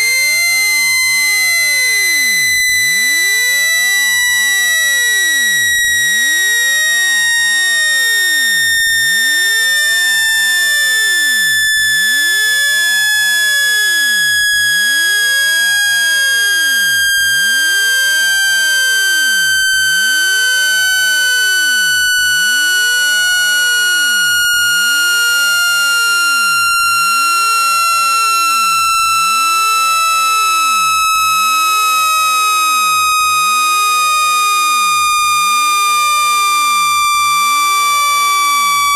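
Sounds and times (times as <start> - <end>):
buzzy high tone sliding down: 14.8 - 34.1.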